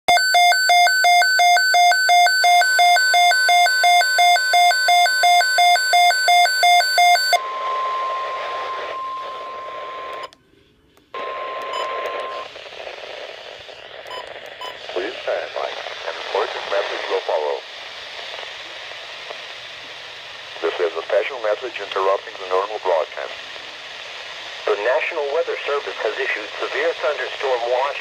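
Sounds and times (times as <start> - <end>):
radio alarm beeping rapidly: 0.1 - 10.3
steady warning tone: 0.1 - 10.4
radio static hiss: 7.4 - 10.3, 11.1 - 28.0.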